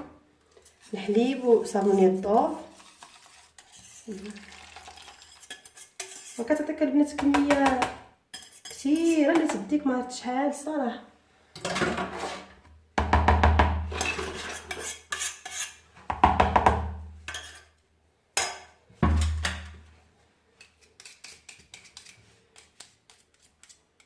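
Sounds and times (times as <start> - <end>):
utensils scraping a bowl: 0.5 - 6.7, 8.3 - 9.6, 11.9 - 12.6, 13.9 - 15.8, 17.3 - 17.8, 20.6 - 24.0.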